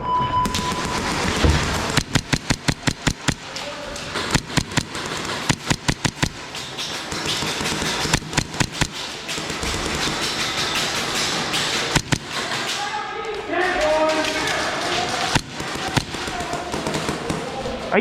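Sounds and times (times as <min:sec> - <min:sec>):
airsoft gun bursts: 0:00.4 - 0:17.6.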